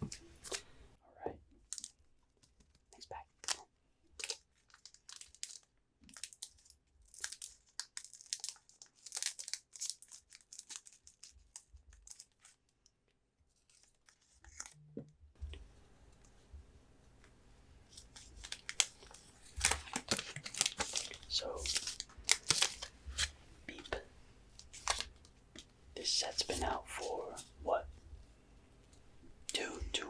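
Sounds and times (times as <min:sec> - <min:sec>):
foil wrapper tearing and crinkling: 0:04.2 - 0:11.3, 0:18.1 - 0:23.3.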